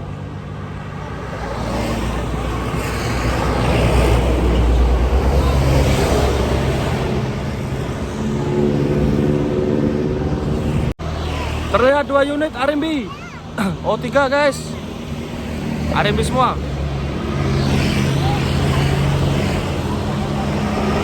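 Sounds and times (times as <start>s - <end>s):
bus engine rumble: 0.0s - 21.0s.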